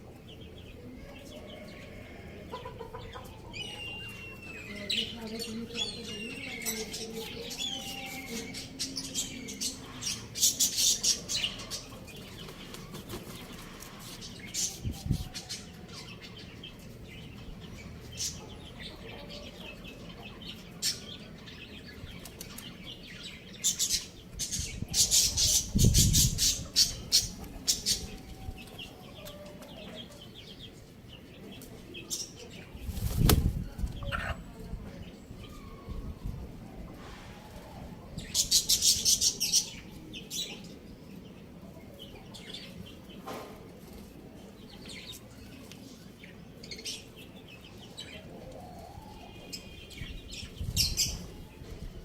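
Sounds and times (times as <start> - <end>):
birds chirping: 0.0 - 36.3
birds flapping wings: 12.4 - 13.9, 32.9 - 33.6.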